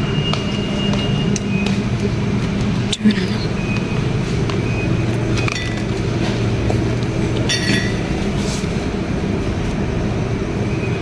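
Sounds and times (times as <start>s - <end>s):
glass or metal clinks: 7.5s - 8.0s.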